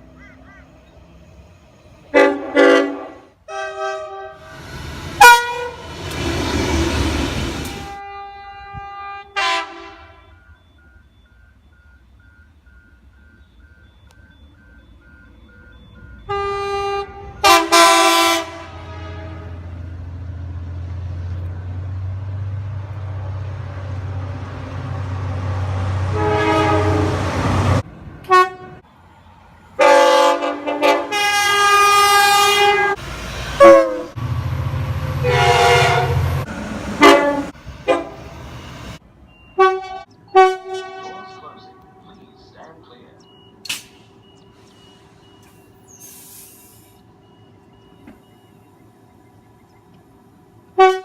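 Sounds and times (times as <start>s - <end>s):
train passing with low rumble: 0.0s - 51.0s
train horn blasts: 2.1s - 4.5s, 5.2s - 6.3s, 7.6s - 10.4s, 16.2s - 20.0s, 26.0s - 28.8s, 29.8s - 33.0s, 33.6s - 34.3s, 35.1s - 38.2s, 39.6s - 42.2s, 50.8s - 51.0s.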